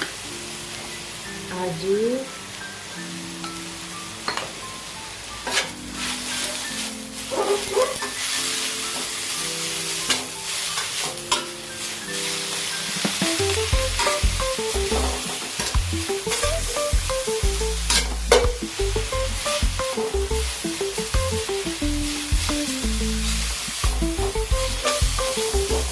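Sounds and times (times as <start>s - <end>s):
background music: 0.0s - 25.9s
leaves sizzling in a pan: 0.0s - 25.9s
heavy bass beat: 13.7s - 15.2s, 15.8s - 20.6s, 21.2s - 25.9s.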